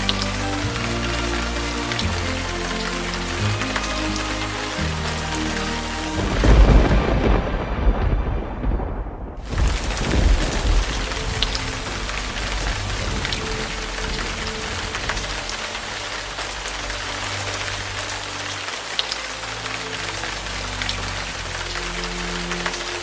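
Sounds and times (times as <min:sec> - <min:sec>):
soft background music: 0:00.0 - 0:08.9, 0:09.6 - 0:23.0
steady rain falling: 0:00.0 - 0:23.0
low rumble: 0:06.2 - 0:18.3.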